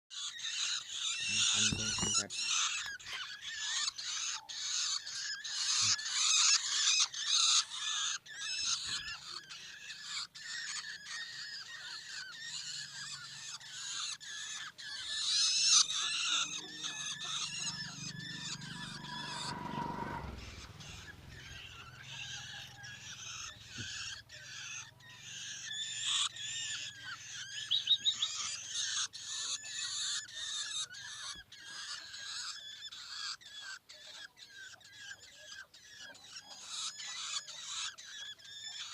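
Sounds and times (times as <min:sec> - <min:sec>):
bird chicks begging calls: 0:00.1 - 0:38.9
low rumble: 0:16.7 - 0:22.5.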